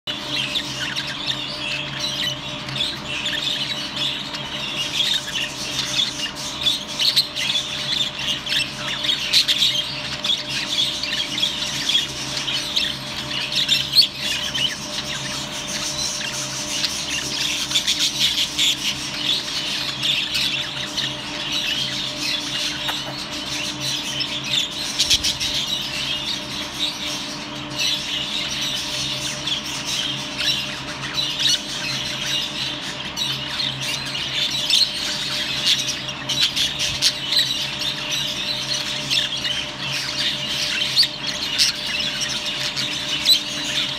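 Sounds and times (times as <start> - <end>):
budgerigars chattering and squawking: 0.1 - 43.9
steady low hum: 0.1 - 43.9.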